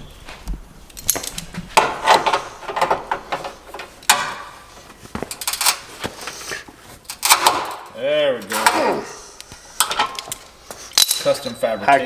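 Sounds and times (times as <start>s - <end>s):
hand tools clanking on metal: 0.9s - 6.5s, 7.1s - 12.0s.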